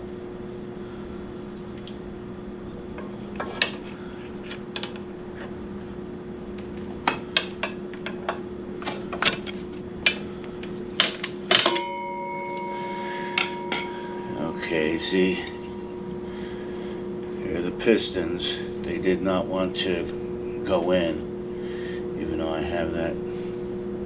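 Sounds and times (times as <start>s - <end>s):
steady low hum: 0.0s - 24.0s
metal tools clinking: 11.0s - 16.0s.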